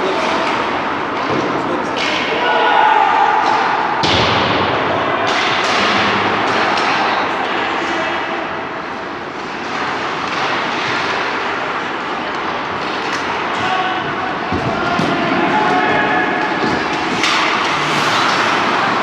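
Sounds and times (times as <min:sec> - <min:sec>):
hockey sticks and puck clacking: 0:00.0 - 0:19.0
skate blades scraping ice: 0:16.5 - 0:19.0.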